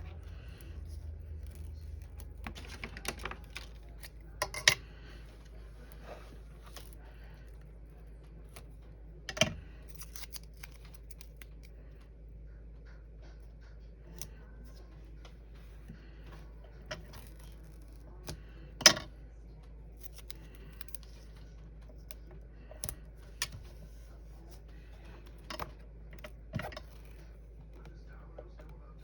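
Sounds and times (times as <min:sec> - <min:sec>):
paper and tape handling: 0:00.0 - 0:11.8.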